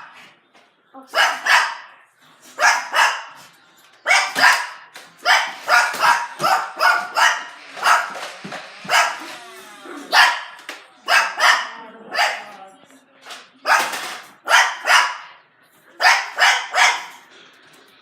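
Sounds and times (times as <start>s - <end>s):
dog barking: 1.1s - 2.0s, 2.6s - 3.4s, 4.1s - 8.2s, 8.8s - 9.3s, 10.1s - 12.6s, 13.6s - 15.4s, 16.0s - 17.3s.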